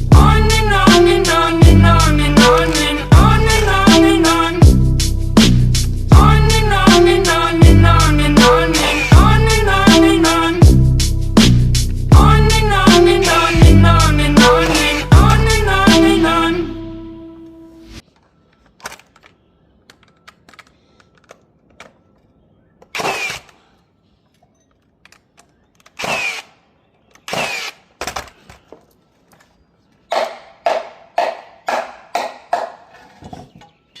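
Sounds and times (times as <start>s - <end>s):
background music: 0.0s - 18.0s.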